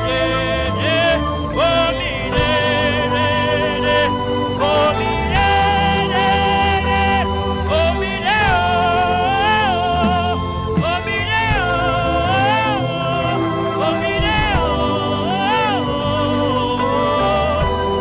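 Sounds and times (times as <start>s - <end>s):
bass line: 0.0s - 18.0s
keyboard chords: 0.0s - 18.0s
person singing wordless melody: 0.0s - 18.0s.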